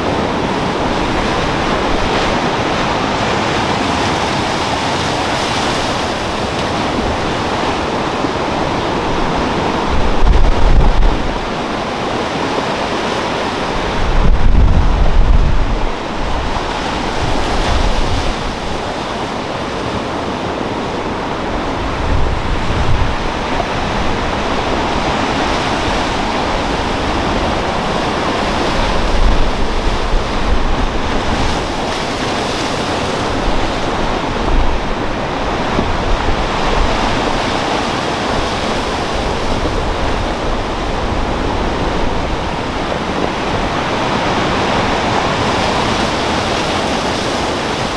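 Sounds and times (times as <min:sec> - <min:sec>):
rough sea surf breaking: 0:00.0 - 0:47.9
strong wind: 0:00.0 - 0:47.9
low rumbling wave surges: 0:06.1 - 0:19.4.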